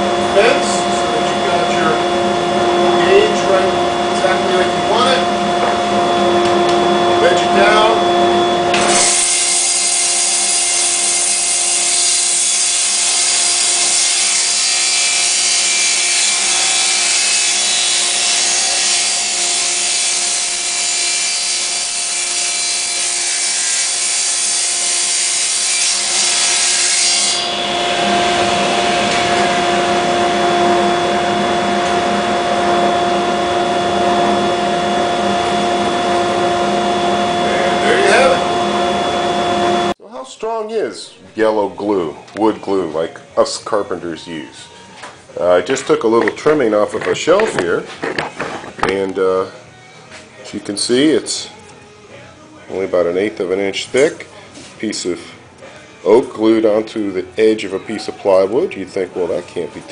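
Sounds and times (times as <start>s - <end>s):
table saw motor hum: 0.0s - 40.0s
saw blade cutting plywood: 8.0s - 39.8s.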